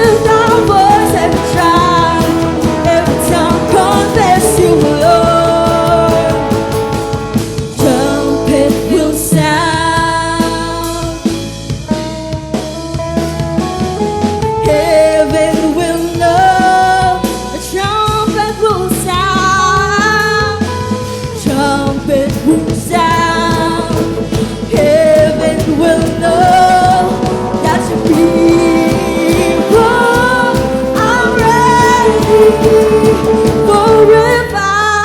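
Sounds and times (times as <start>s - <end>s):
people singing: 0.0s - 11.0s, 21.5s - 35.0s
band playing worship music: 0.0s - 35.0s.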